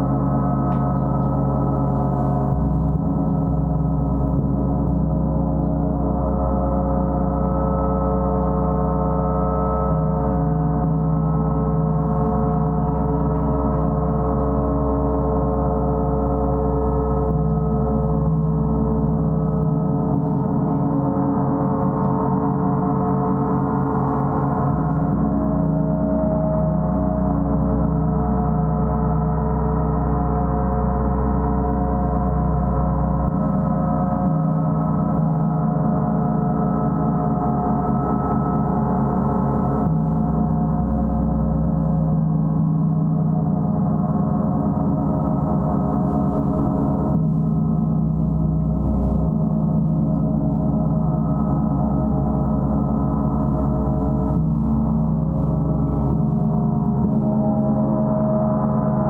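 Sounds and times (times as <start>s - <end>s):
deep hum: 0.0s - 59.0s
gong ringing: 48.6s - 59.0s.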